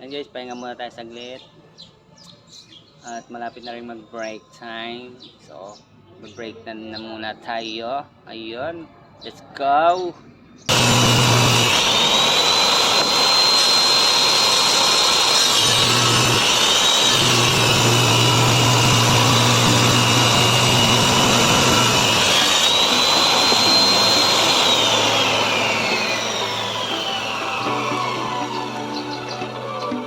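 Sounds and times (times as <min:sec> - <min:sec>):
power tool motor whine: 0:10.7 - 0:30.0.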